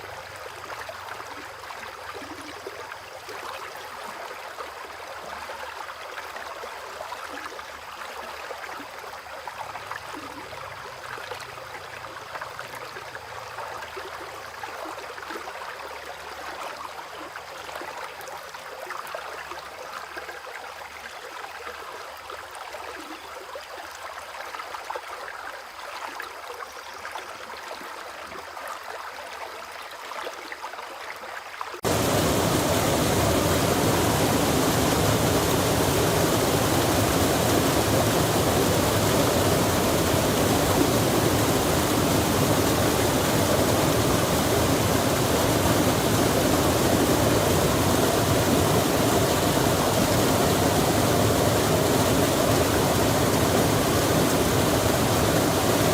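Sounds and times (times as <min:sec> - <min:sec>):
stream water running: 0:00.0 - 0:55.9
rain falling: 0:31.8 - 0:55.9.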